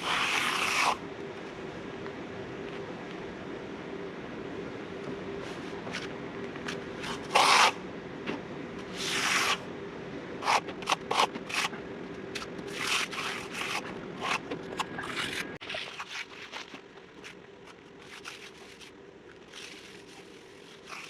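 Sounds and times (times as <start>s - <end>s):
hand tool scraping concrete: 0.0s - 1.0s, 12.7s - 16.2s, 19.6s - 21.0s
faint steady hum: 0.0s - 21.0s.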